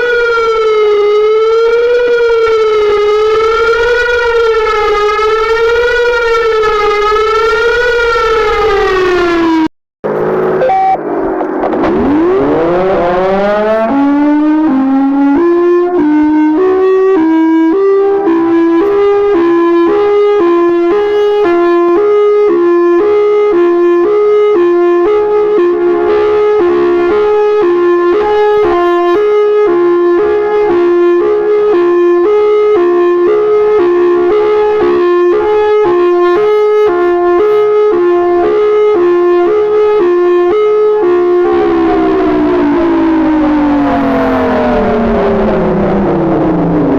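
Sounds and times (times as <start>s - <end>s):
hi-lo warning siren: 0.0s - 46.9s.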